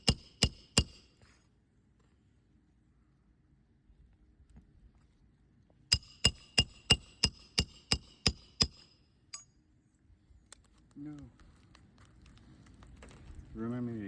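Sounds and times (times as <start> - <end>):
hammer striking metal: 0.0 - 1.1, 5.9 - 9.6.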